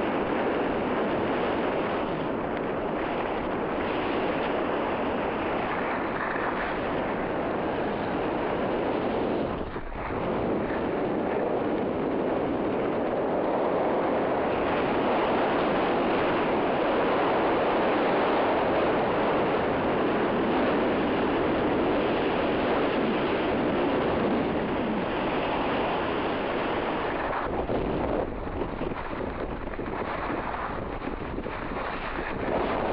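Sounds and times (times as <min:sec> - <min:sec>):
wind over microphone: 0:00.0 - 0:32.9
skis running on snow: 0:00.1 - 0:11.7, 0:25.3 - 0:32.9.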